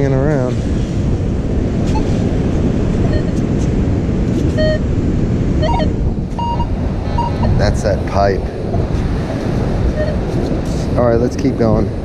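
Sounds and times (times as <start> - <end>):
wind rumble on microphone: 0.0 - 12.0
metal detector beep: 1.9 - 2.1, 3.1 - 3.4, 4.5 - 4.8, 5.6 - 7.6, 9.9 - 10.2.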